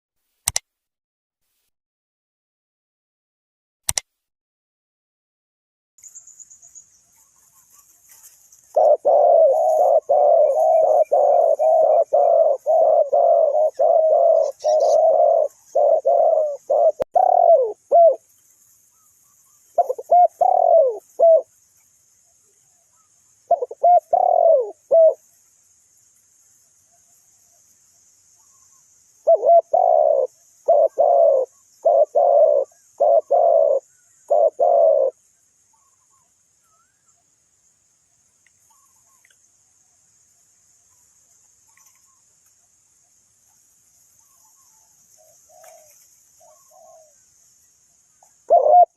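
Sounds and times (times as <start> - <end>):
dove cooing: 7.6 - 18.3, 19.7 - 21.5, 23.5 - 25.2, 29.2 - 35.2, 45.2 - 47.2, 48.3 - 48.9.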